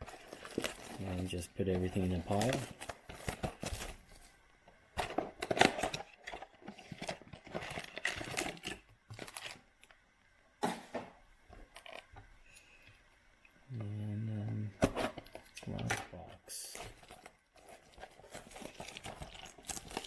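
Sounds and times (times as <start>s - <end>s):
card packs tapping onto pile: 0.0s - 4.0s
cardboard boxes tearing: 0.0s - 4.2s, 16.7s - 20.0s
foil packs crinkling: 0.0s - 10.0s, 14.8s - 20.0s.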